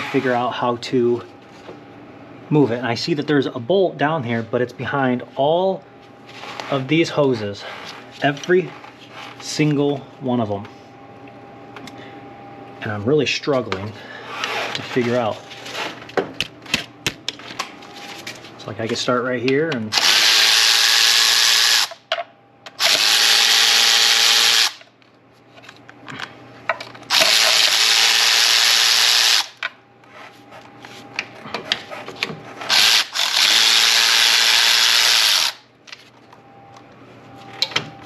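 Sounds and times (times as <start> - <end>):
power drill running: 0.0 - 0.5, 19.9 - 22.0, 22.8 - 24.9, 27.1 - 29.6, 32.7 - 35.6.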